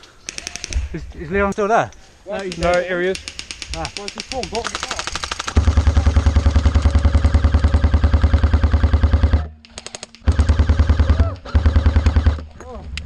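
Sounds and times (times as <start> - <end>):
airsoft rifle firing full-auto: 2.5 - 12.4
faint distant gunfire: 2.5 - 12.5.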